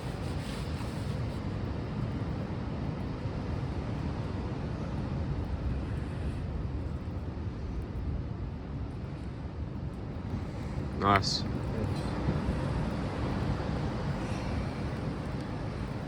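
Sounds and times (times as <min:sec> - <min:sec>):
wind rumble on microphone: 0:00.0 - 0:16.0
sea waves washing: 0:10.0 - 0:16.0.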